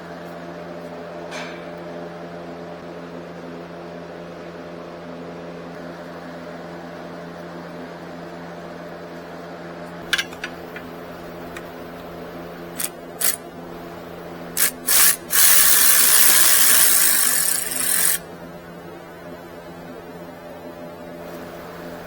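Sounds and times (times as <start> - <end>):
handheld power tool running: 10.1 - 13.8, 14.5 - 18.3.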